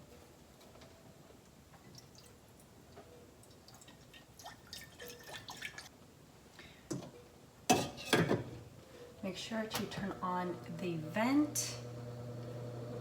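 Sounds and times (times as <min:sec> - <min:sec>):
water dripping: 0:03.4 - 0:05.9.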